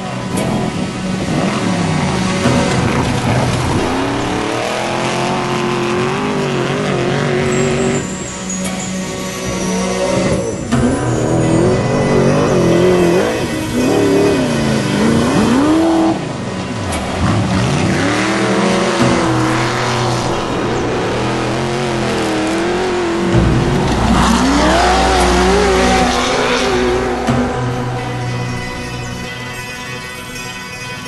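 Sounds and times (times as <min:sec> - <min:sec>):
race vehicle engines revving: 0:00.0 - 0:30.5
deep rumble: 0:18.6 - 0:29.6.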